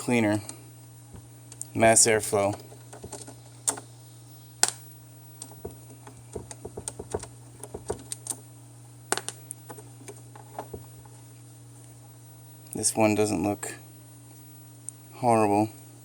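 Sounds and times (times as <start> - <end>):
steady low hum: 0.0 - 16.0
plastic clicks and taps: 2.8 - 3.8, 5.4 - 8.4.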